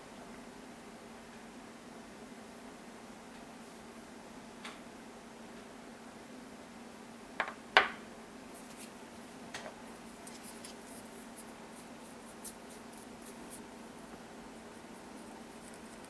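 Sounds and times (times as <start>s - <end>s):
steady low hum: 0.0s - 16.0s
light ticking and scraping: 8.5s - 16.0s.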